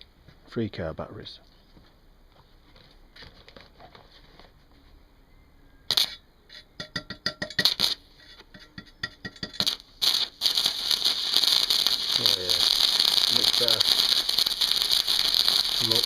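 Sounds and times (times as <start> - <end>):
welding arc crackling: 7.6 - 8.0, 9.4 - 16.0.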